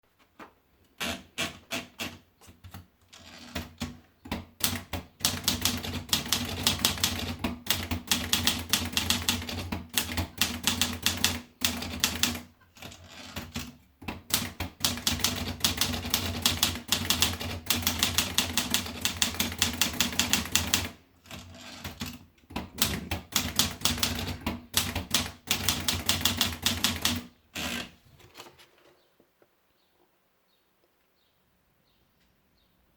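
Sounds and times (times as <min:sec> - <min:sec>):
typewriter keys typing fast: 0:03.2 - 0:27.9.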